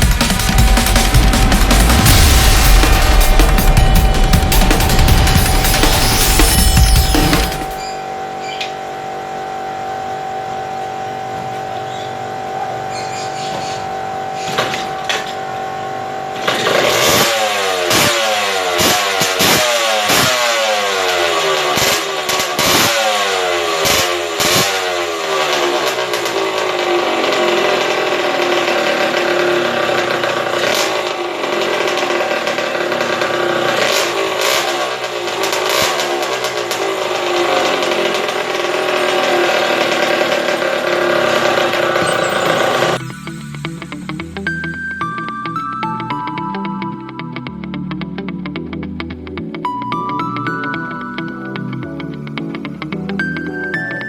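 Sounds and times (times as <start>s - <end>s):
motorcycle engine revving: 0.0s - 7.9s, 16.2s - 44.9s
sharp exhaust cracks: 0.0s - 8.0s, 16.3s - 44.7s.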